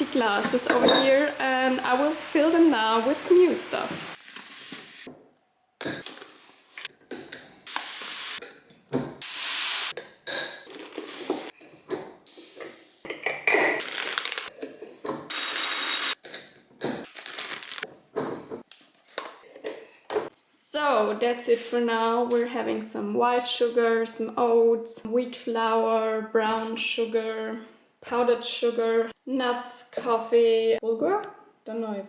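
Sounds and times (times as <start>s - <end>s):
glass jars and lids clinking: 0.4s - 1.2s, 5.8s - 6.3s, 10.0s - 17.0s
dry food pouring into jars: 13.8s - 14.5s, 17.1s - 17.8s.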